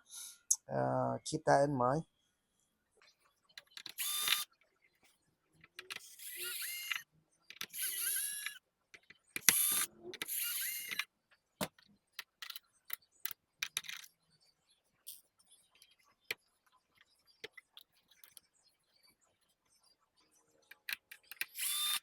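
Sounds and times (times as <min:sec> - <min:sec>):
electric screwdriver whirring: 0:04.0 - 0:04.4, 0:06.0 - 0:07.0, 0:07.7 - 0:08.6, 0:09.4 - 0:11.0, 0:21.5 - 0:22.0.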